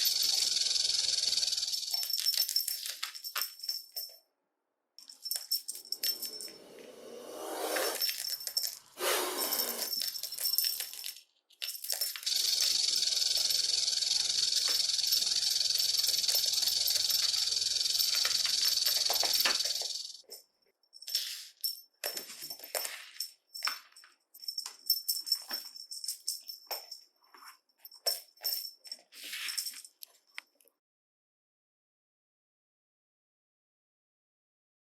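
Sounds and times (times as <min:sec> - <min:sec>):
snake rattling: 0:00.0 - 0:03.5, 0:11.9 - 0:20.4
snake hissing: 0:06.9 - 0:08.0, 0:09.0 - 0:09.9, 0:12.3 - 0:20.2.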